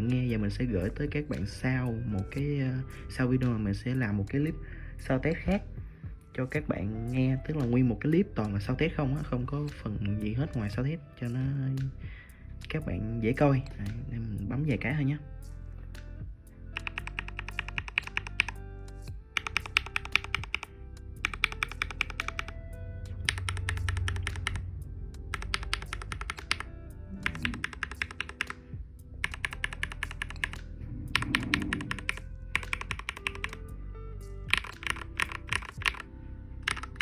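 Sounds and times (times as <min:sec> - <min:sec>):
mechanical keyboard typing: 0:16.8 - 0:18.6, 0:19.3 - 0:22.6, 0:23.3 - 0:24.6, 0:25.3 - 0:28.6, 0:29.2 - 0:33.6, 0:34.5 - 0:36.0, 0:36.6 - 0:37.0.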